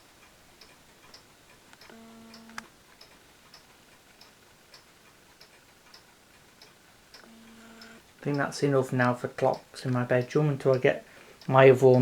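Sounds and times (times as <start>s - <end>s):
wall clocks ticking: 0.0s - 12.0s
low hum ending in click: 1.1s - 3.2s.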